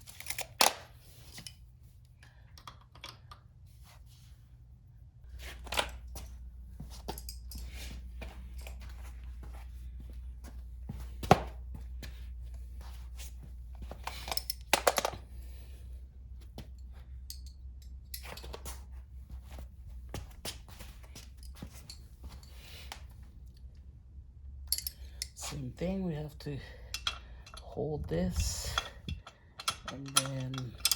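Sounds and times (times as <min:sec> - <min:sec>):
metal tools clicking and knocking: 0:00.0 - 0:00.8, 0:02.6 - 0:03.4, 0:07.0 - 0:07.8, 0:14.0 - 0:15.2, 0:17.3 - 0:18.6, 0:24.7 - 0:25.4, 0:26.6 - 0:30.9
steady low hum: 0:00.0 - 0:30.9.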